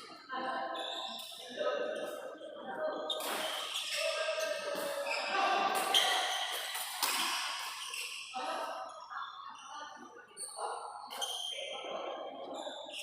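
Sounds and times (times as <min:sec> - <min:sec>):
voices in a hall: 0:00.0 - 0:13.0
rackets hitting shuttlecock: 0:05.7 - 0:07.8.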